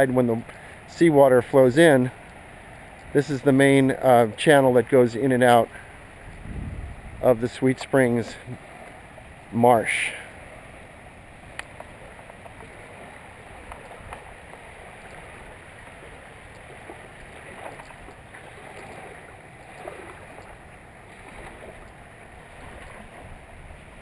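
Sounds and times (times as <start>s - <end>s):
outdoor background noise: 0.0s - 24.0s
faint ticks: 11.5s - 12.6s, 13.7s - 14.6s.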